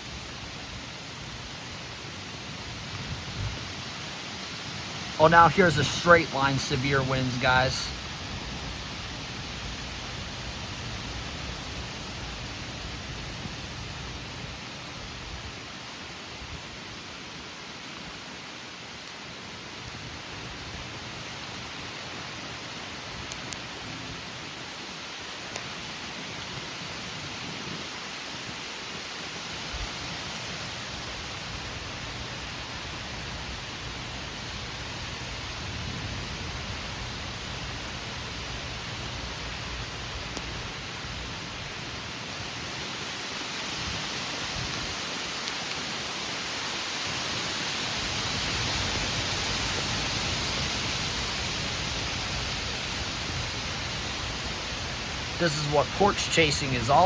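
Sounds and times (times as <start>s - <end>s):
heavy rain: 0.0s - 57.0s
gusty storm wind: 2.4s - 15.6s.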